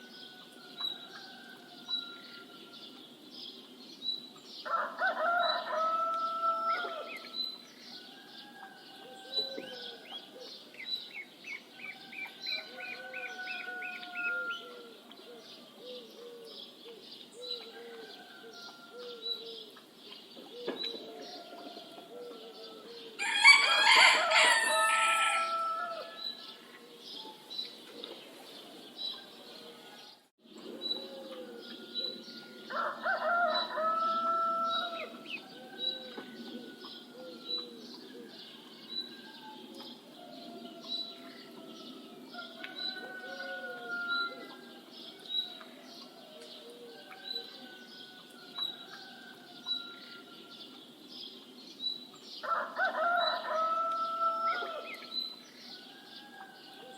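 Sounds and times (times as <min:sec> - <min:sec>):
rooster crowing: 0:04.7 - 0:07.2, 0:11.9 - 0:14.9, 0:21.2 - 0:26.6, 0:32.2 - 0:37.4, 0:40.2 - 0:44.9, 0:52.4 - 0:55.0.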